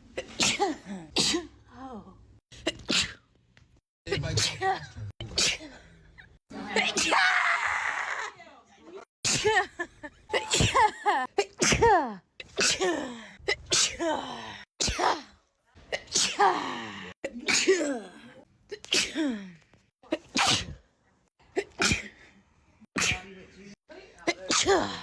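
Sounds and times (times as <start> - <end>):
person sneezing: 2.6 - 3.2, 15.9 - 18.0, 20.2 - 20.8, 23.0 - 23.3, 24.3 - 25.0.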